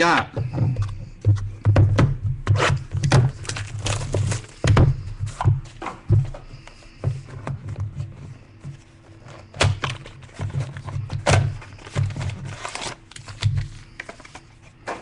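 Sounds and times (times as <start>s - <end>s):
cardboard thumps and knocks: 0.4s - 8.0s, 9.5s - 12.4s
packaging rustling: 2.5s - 5.1s, 7.4s - 14.8s.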